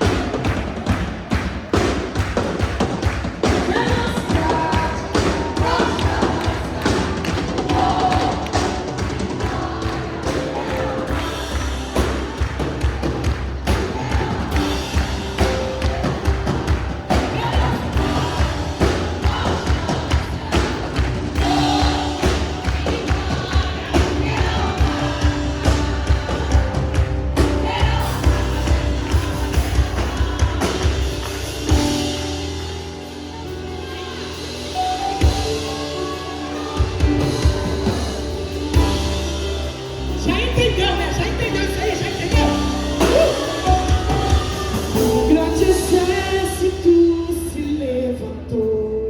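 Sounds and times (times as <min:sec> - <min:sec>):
steady drum beat: 0:00.0 - 0:33.1, 0:33.9 - 0:46.5
gospel worship song: 0:00.0 - 0:49.0
person singing: 0:33.0 - 0:49.0.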